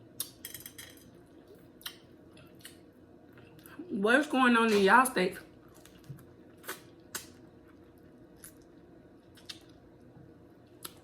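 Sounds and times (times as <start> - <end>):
person chewing food: 5.6 - 10.0.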